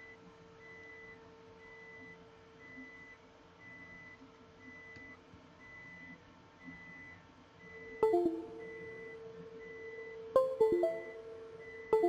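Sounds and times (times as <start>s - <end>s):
faint electronic beeps: 7.6s - 12.0s.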